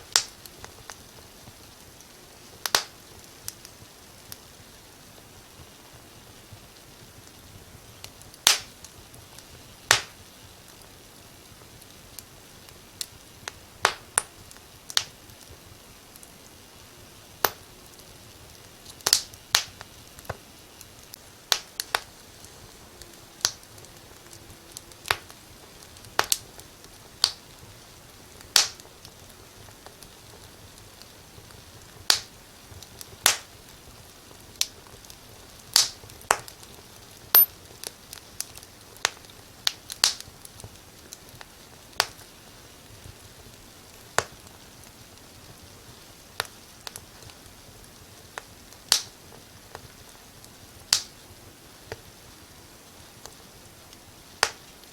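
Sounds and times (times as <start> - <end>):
faint hiss: 0.0 - 30.9
wood fire crackling: 0.0 - 54.9.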